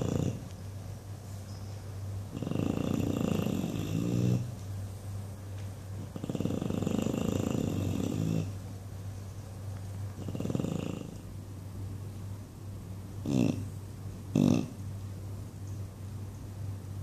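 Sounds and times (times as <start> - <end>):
dog snoring: 0.0 - 0.5, 2.3 - 4.5, 6.0 - 8.6, 10.2 - 11.2, 13.2 - 13.7, 14.3 - 14.8.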